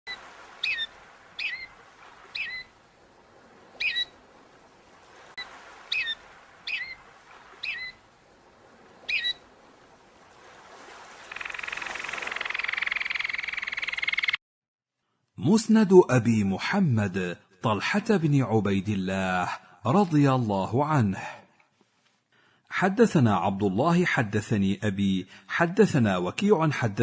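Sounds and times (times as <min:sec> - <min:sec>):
bird chirping: 0:00.6 - 0:01.7, 0:02.3 - 0:02.7, 0:03.8 - 0:04.1, 0:05.9 - 0:07.0, 0:07.6 - 0:08.0, 0:09.1 - 0:09.4, 0:11.3 - 0:14.4.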